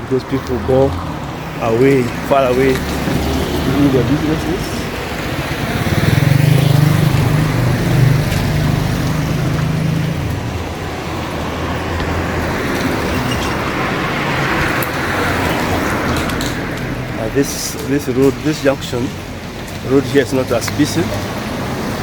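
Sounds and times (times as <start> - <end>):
vehicle engine running: 0.0 - 16.1
road noise: 0.0 - 22.0.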